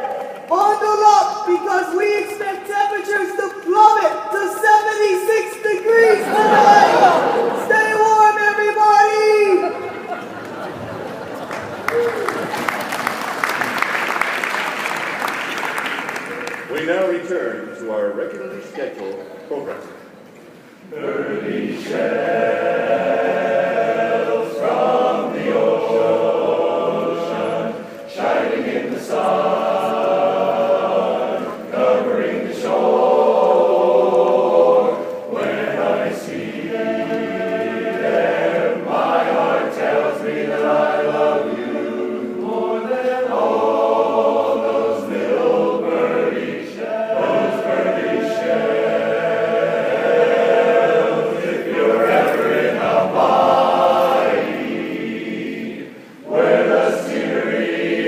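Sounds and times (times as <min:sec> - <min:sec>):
men's chorus singing a cappella: 0:06.1 - 0:07.6, 0:20.9 - 0:58.0.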